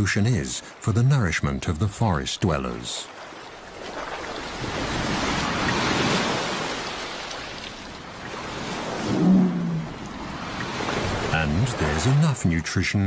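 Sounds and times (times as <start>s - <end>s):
waves surging against rocks: 2.6s - 12.6s.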